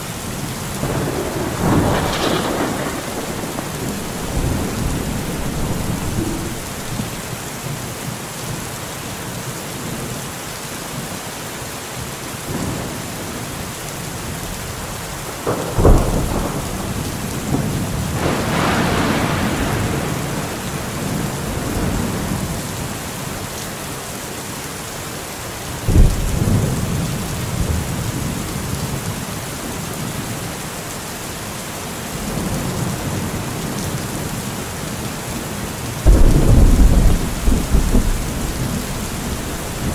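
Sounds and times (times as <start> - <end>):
steady rain: 0.0 - 39.9
rolling thunder: 0.4 - 7.5, 14.8 - 22.7, 25.9 - 28.5, 36.0 - 39.9
sharp thunderclaps: 0.8 - 7.4, 15.3 - 22.5, 25.9 - 27.7, 36.1 - 39.9.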